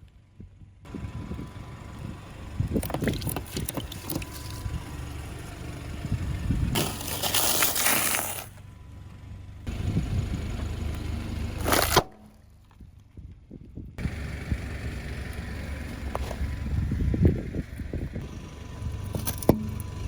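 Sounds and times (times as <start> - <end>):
car engine running: 0.5 - 13.0, 14.0 - 20.0
tyres crushing objects: 6.8 - 8.6, 11.6 - 12.4
sharp crack: 11.6 - 12.4.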